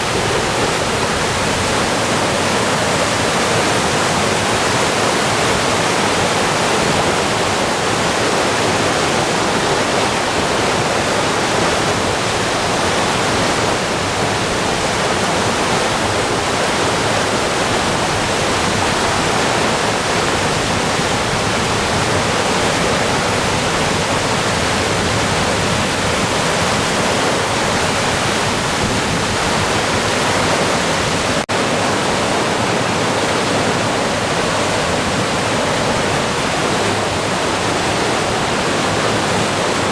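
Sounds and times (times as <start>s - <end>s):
river roaring: 0.0s - 39.9s.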